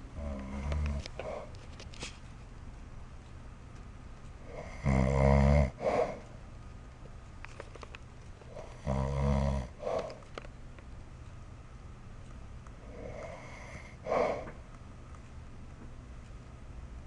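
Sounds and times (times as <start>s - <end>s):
man snoring: 0.2s - 1.4s, 4.5s - 6.2s, 8.6s - 10.1s, 12.9s - 14.5s
short exhale: 13.2s - 14.6s.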